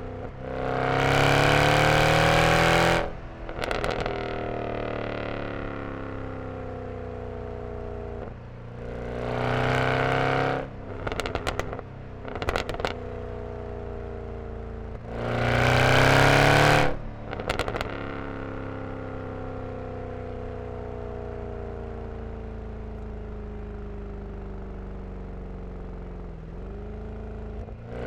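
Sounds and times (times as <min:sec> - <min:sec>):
exhaust crackles and pops: 0:02.8 - 0:06.1, 0:10.9 - 0:13.1, 0:16.7 - 0:18.6
car engine revving: 0:15.0 - 0:18.8.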